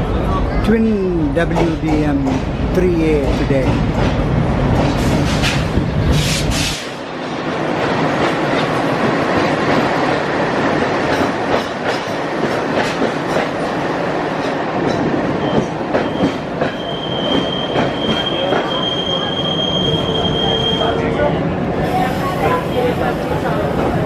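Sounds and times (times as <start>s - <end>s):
train wheels rumbling on rail: 0.0s - 24.0s
high wheel squeal: 15.4s - 21.0s.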